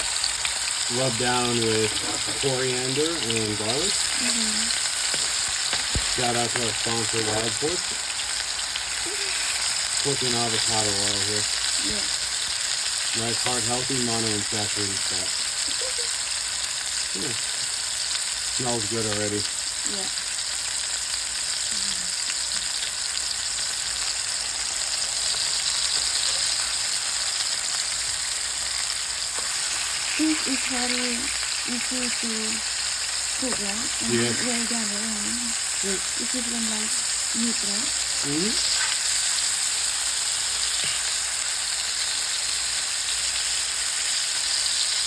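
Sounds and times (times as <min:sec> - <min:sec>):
fish sizzling in a pan: 0:00.0 - 0:45.0.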